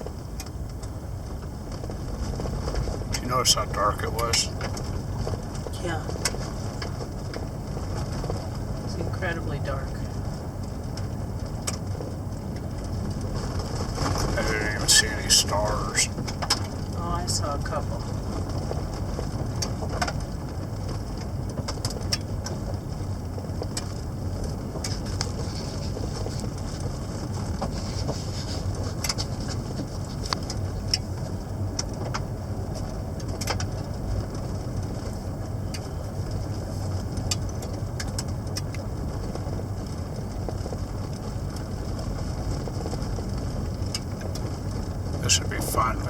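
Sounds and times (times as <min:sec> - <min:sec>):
car road and engine rumble: 0:00.0 - 0:46.0
small ticks and rattles: 0:10.1 - 0:14.7, 0:18.0 - 0:45.3.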